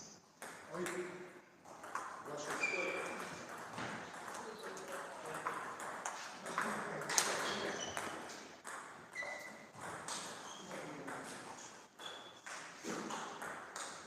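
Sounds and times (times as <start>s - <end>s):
table tennis balls clicking: 0.4s - 11.3s, 12.2s - 14.0s.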